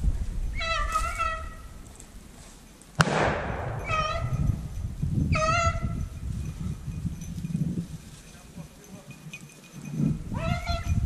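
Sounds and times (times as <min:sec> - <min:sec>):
shotgun shot with echo: 0:03.0 - 0:04.2.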